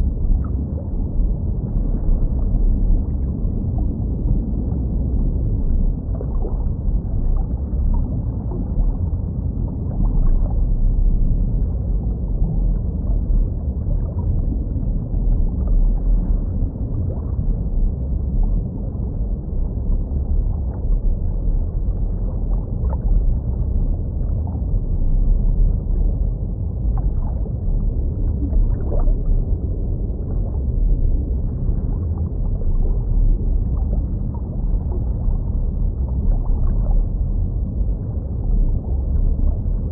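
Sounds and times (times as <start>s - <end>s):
muffled underwater low rumble: 0.0s - 39.9s.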